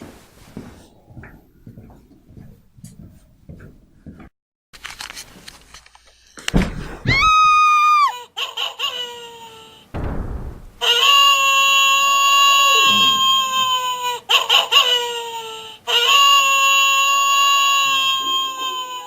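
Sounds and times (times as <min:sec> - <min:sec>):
thud: 0:06.5 - 0:07.1, 0:09.9 - 0:11.0
high-pitched scream: 0:07.1 - 0:08.2, 0:10.8 - 0:14.0, 0:15.9 - 0:19.0.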